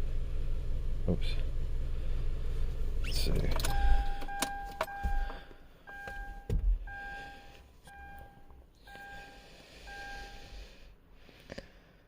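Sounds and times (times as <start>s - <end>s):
car warning chime beeping: 3.6s - 10.6s
dull thump: 6.1s - 6.9s.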